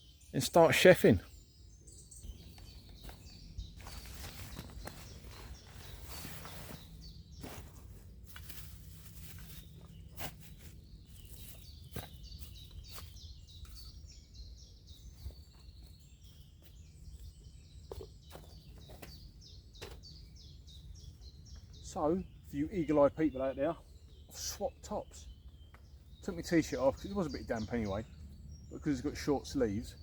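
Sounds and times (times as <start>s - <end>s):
small birds chirping: 0.0s - 30.0s
knocks and rustles of movement: 2.3s - 13.9s.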